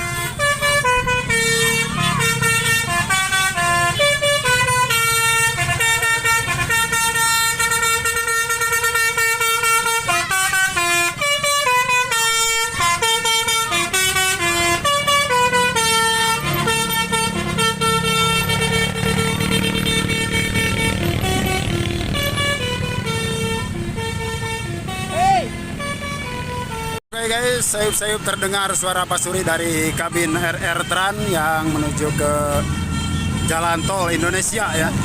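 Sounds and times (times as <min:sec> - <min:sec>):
multi-tone air horn tune: 0:00.0 - 0:27.0
bus engine running: 0:00.0 - 0:33.9.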